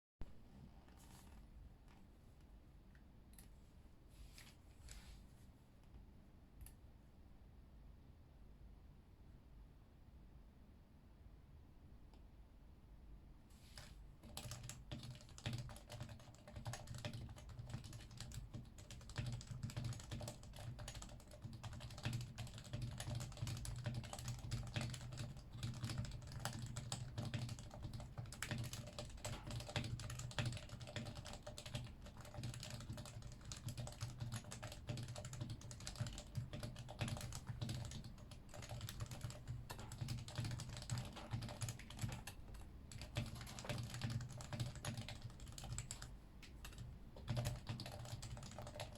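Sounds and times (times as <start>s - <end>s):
fast typing on keyboard: 14.2s - 48.9s.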